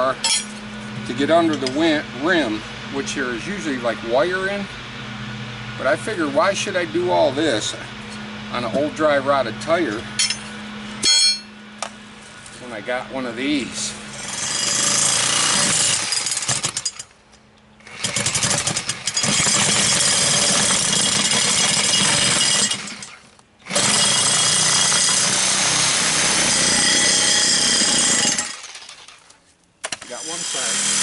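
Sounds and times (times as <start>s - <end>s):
power tool cutting rubber: 14.1s - 16.9s, 17.8s - 29.3s, 29.9s - 31.0s.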